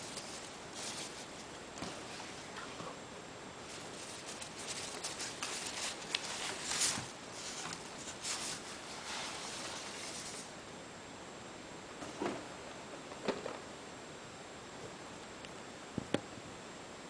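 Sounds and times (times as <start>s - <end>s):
packaging rustling and clicking: 3.7s - 8.8s.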